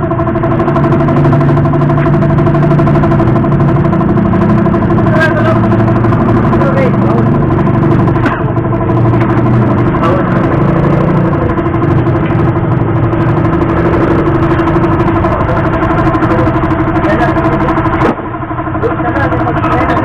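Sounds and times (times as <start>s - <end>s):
motorcycle engine idling: 0.0s - 20.0s
people talking: 5.0s - 7.4s, 9.9s - 11.2s, 13.7s - 18.2s, 18.8s - 20.0s.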